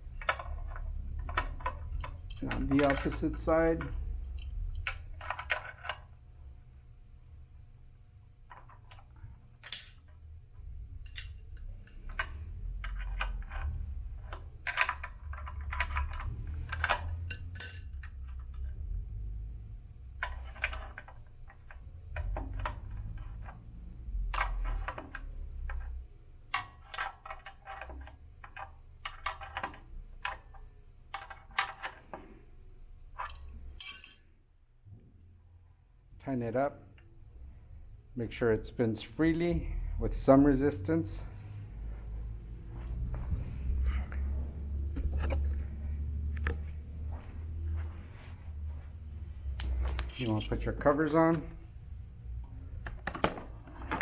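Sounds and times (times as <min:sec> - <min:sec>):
low rumble of machine handled: 0:00.0 - 0:06.2, 0:10.0 - 0:32.2, 0:41.2 - 0:50.5
wrench clicking on metal nuts: 0:50.1 - 0:50.6.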